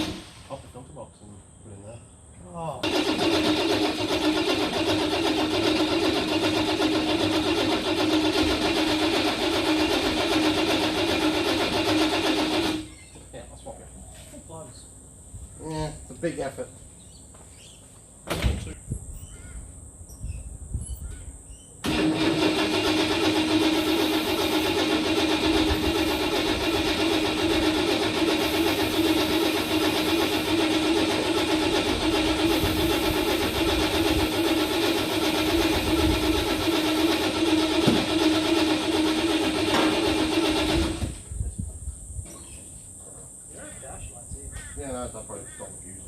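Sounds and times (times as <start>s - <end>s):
starter motor cranking engine: 0.0s - 0.7s, 2.8s - 13.1s, 21.8s - 41.4s.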